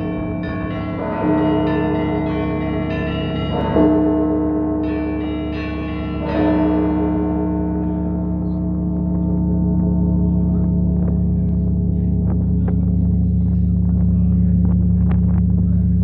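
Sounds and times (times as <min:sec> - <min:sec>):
small bells chiming: 0:00.0 - 0:12.0
big church bell struck: 0:00.0 - 0:16.0.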